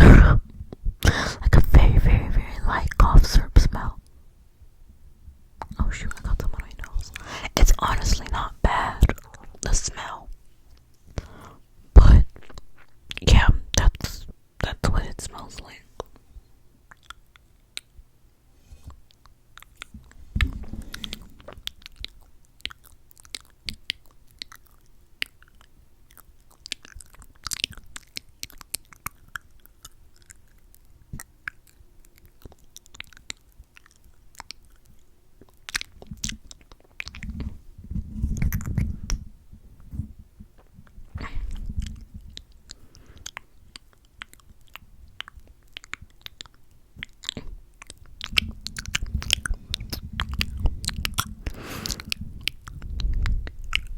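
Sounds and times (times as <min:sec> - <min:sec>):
sticky lip smacks and clicks: 0:19.1 - 0:37.5, 0:40.8 - 0:53.9
low muffled rumbles: 0:47.4 - 0:53.9.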